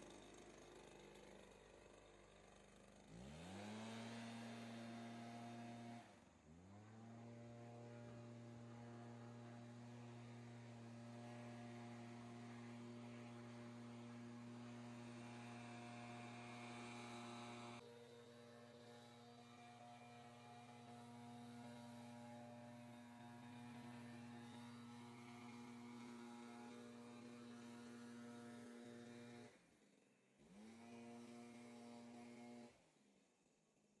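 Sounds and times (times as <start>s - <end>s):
small motor spinning: 10.0s - 18.1s.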